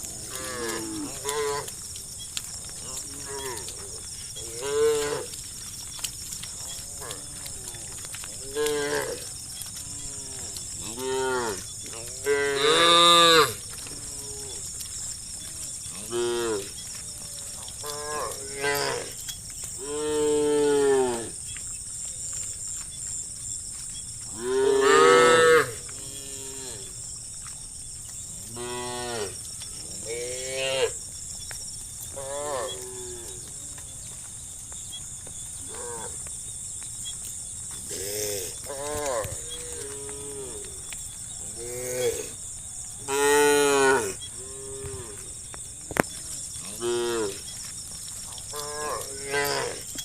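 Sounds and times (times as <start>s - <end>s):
cows mooing: 0.0s - 1.8s, 2.7s - 5.4s, 6.6s - 14.7s, 15.5s - 19.2s, 24.3s - 26.9s, 43.1s - 45.2s, 46.6s - 47.4s, 48.5s - 50.0s.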